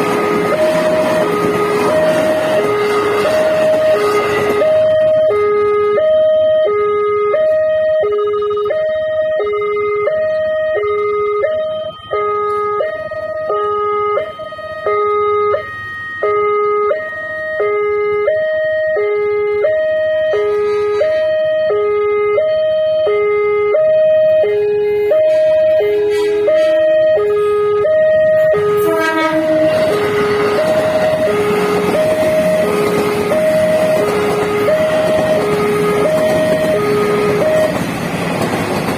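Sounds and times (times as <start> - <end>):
passing train wheel noise: 0.0 - 5.9, 20.0 - 21.7, 23.5 - 38.9
two-tone level crossing siren: 0.0 - 38.9.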